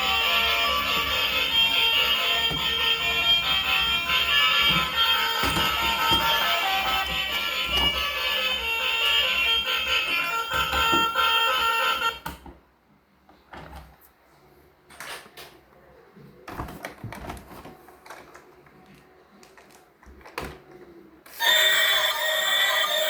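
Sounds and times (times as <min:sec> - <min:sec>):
bright many-toned tune: 0:00.0 - 0:12.2, 0:21.3 - 0:23.0.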